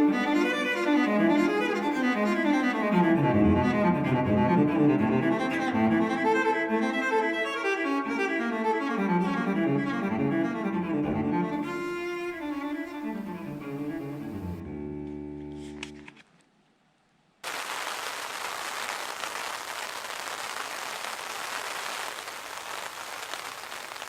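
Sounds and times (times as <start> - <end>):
solo cello melody: 0.0 - 15.9.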